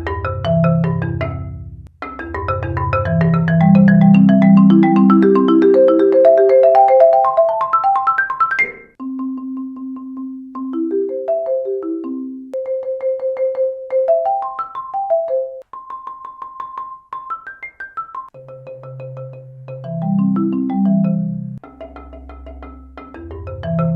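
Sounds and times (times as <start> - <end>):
marimba fast runs: 0.0 - 23.9.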